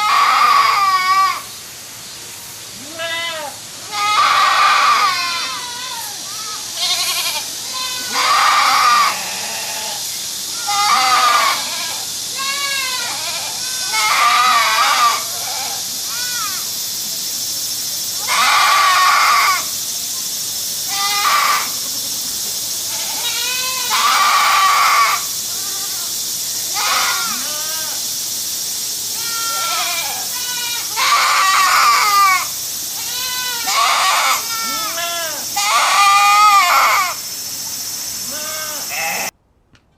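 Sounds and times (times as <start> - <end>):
goats bleating: 0.0 - 1.5, 2.8 - 16.6, 18.2 - 19.7, 20.9 - 21.8, 22.9 - 26.1, 26.7 - 28.0, 29.2 - 37.2, 38.3 - 39.4
steady background hiss: 0.0 - 39.9.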